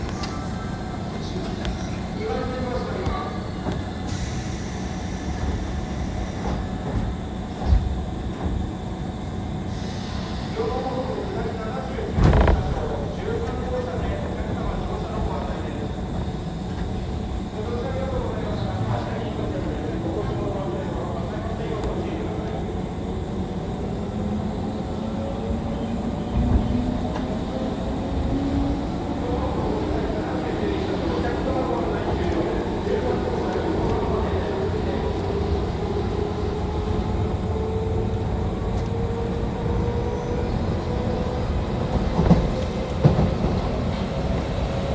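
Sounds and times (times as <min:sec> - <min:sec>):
train wheels rumbling on rail: 0:00.0 - 0:44.9
loud thump: 0:12.2 - 0:12.9.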